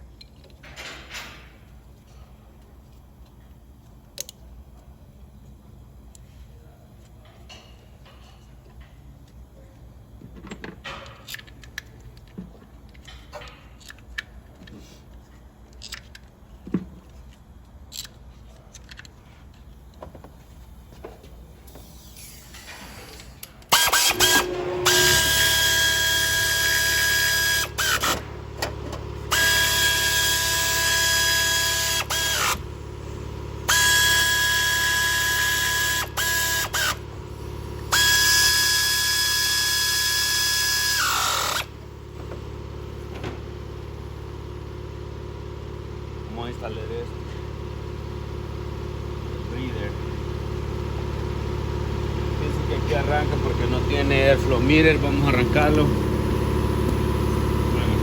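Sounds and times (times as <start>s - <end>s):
tools and parts clicking: 0.1s - 1.3s, 2.8s - 4.4s, 10.4s - 19.7s
power tool motor whining: 23.7s - 46.2s, 47.2s - 58.0s.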